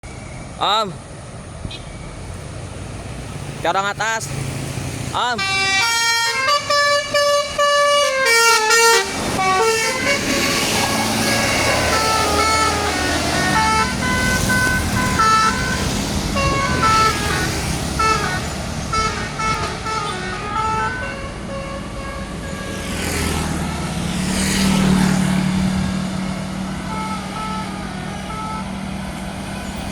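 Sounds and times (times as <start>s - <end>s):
musical air horn tune: 5.4s - 22.7s, 26.8s - 28.8s.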